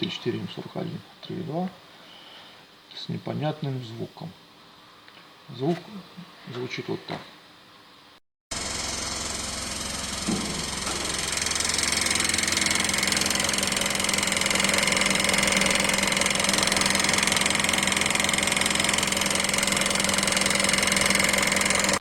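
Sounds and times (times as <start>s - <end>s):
diesel engine running: 8.6s - 22.0s
engine knocking: 8.8s - 22.0s.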